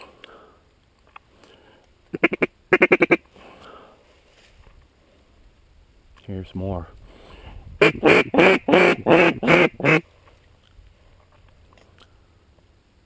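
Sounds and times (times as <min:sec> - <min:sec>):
duck quacking: 0:02.1 - 0:03.2, 0:07.8 - 0:10.0.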